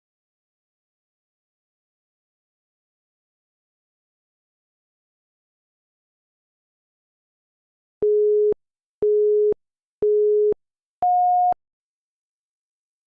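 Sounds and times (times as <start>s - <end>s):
countdown timer beeps: 8.0s - 11.6s.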